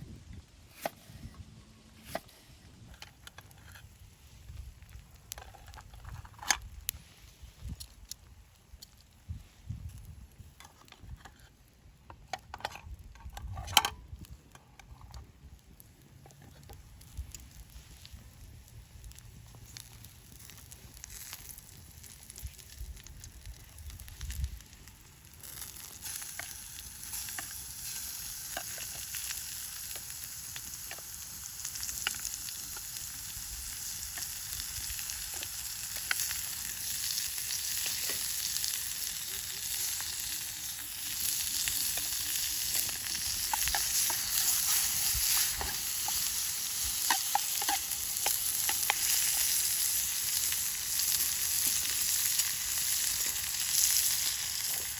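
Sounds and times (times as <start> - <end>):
food sizzling in pan: 23.6 - 54.9.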